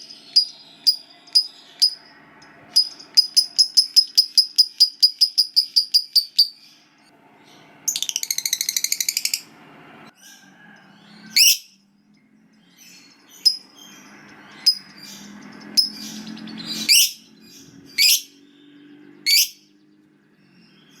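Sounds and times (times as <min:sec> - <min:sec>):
lovebird shrill calls: 0:11.3 - 0:11.7, 0:12.9 - 0:17.3, 0:17.9 - 0:18.4, 0:19.3 - 0:19.6.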